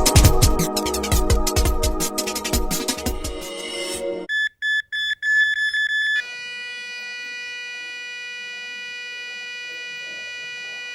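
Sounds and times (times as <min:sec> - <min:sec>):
short high alarm beeps: 0:04.3 - 0:10.9
steady buzzy alarm tone: 0:04.3 - 0:10.9.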